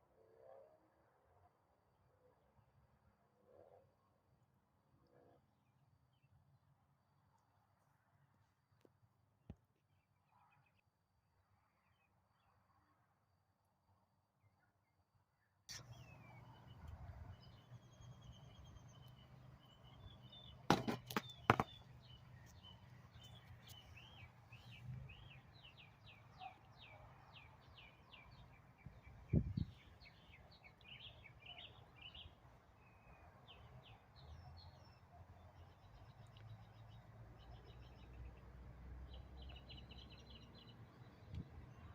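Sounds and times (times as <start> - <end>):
birds chirping: 15.7 - 35.0
single knock: 20.7 - 21.7.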